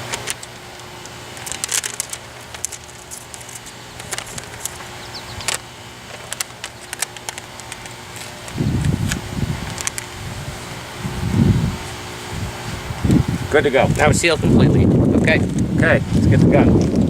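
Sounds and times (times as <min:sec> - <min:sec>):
plastic crinkling: 0:00.0 - 0:10.4
wind rumble on microphone: 0:08.5 - 0:17.0.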